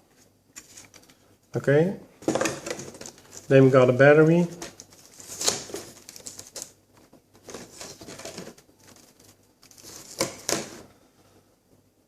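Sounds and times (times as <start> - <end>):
battery and packaging handling: 4.3 - 10.8.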